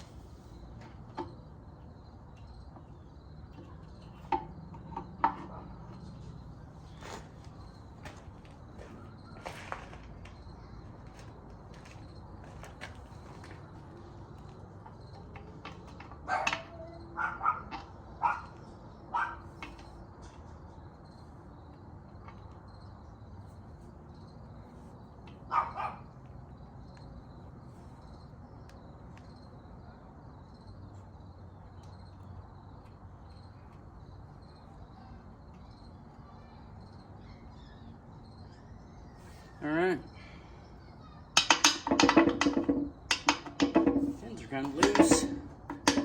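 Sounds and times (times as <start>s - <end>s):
dog barking: 16.3s - 19.5s, 25.5s - 26.1s.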